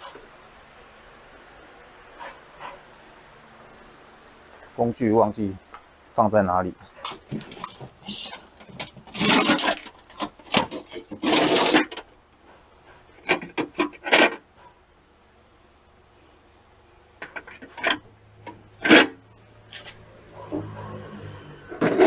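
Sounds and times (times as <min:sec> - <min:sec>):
metal hand tools clattering: 0:07.0 - 0:12.1, 0:18.8 - 0:19.3.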